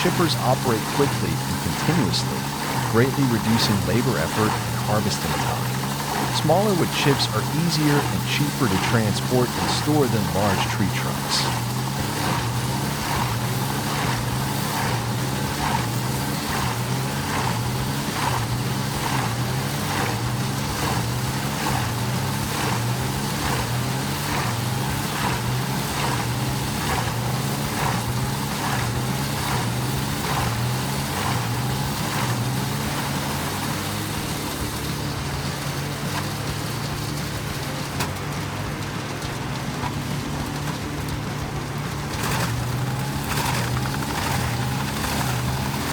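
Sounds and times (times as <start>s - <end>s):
wood chipper engine running: 0.0s - 45.9s
wood cracking in chipper: 0.0s - 45.9s.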